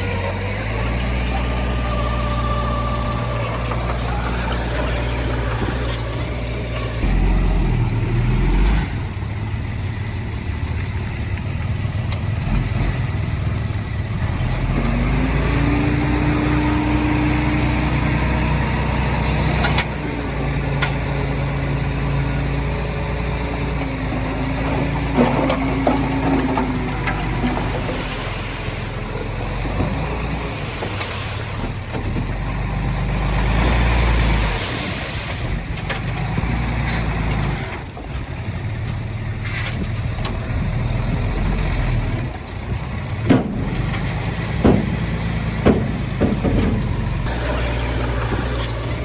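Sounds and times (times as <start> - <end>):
rising tone: 0.0 - 8.9
heavy diesel machine engine: 0.0 - 49.0.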